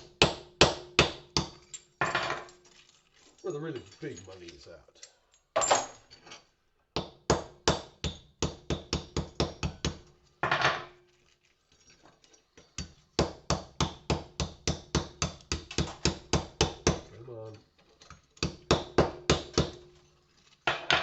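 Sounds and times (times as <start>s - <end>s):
hammer smashing porcelain: 7.0s - 11.0s, 12.7s - 17.1s, 18.0s - 20.0s, 20.6s - 21.0s.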